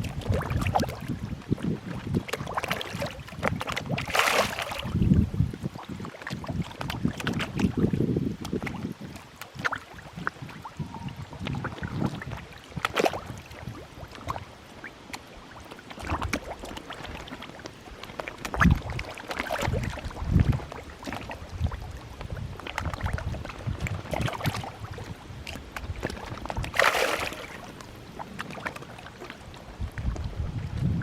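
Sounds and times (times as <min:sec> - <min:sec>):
fish splashing at water surface: 0:02.3 - 0:05.1, 0:15.1 - 0:29.4.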